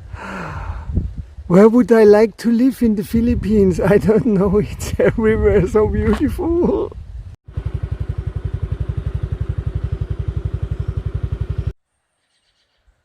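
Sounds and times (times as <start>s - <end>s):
motorcycle engine puttering: 7.5s - 11.7s.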